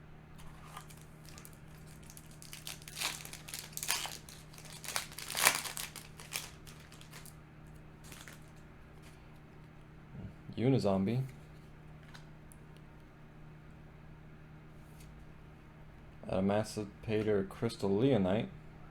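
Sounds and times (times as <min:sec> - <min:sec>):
foil wrapper crinkling and tearing: 0:00.4 - 0:07.4, 0:08.0 - 0:09.1.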